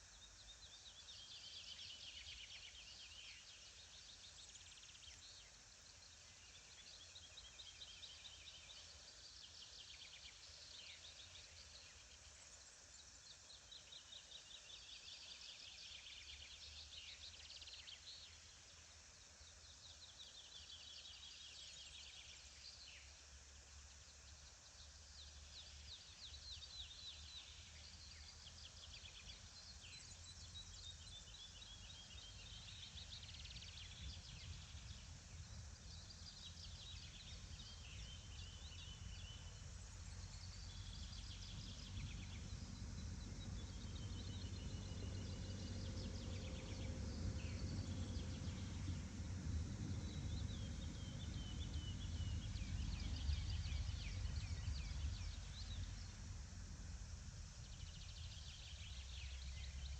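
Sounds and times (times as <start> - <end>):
songbirds trilling: 0.0 - 59.9
faint low rumble: 23.5 - 59.9.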